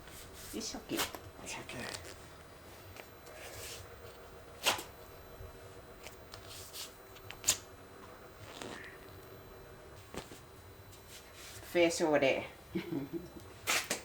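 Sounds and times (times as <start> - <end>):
strip rubbing on skin: 0.0 - 4.9, 6.0 - 9.0, 10.0 - 11.7
waxing strips ripped off skin: 0.1 - 2.4, 3.0 - 4.9, 6.0 - 9.0, 10.0 - 10.5, 13.6 - 14.0.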